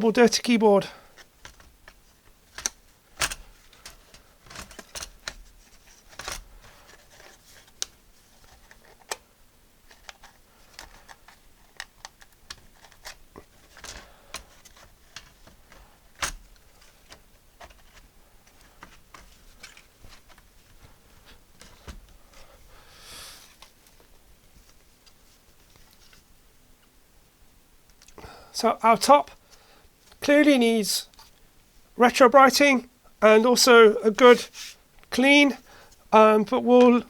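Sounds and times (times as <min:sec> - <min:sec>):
plastic parts clicking and knocking: 0:01.1 - 0:22.5.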